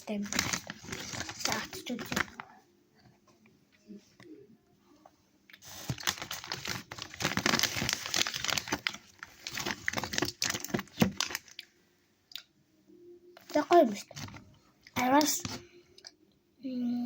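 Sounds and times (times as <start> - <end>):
candy wrapper crinkling: 0.0 - 2.4, 5.6 - 11.7.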